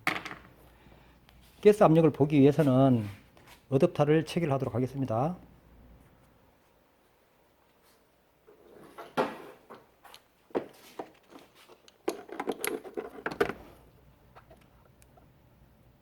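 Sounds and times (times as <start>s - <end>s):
metal clicks and rattles: 11.8s - 13.6s.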